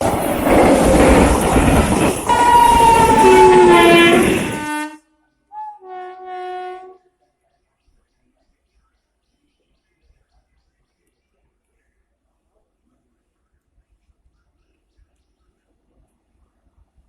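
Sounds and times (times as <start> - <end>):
train rumbling past: 0.0 - 5.0
locomotive horn blowing: 2.3 - 7.1.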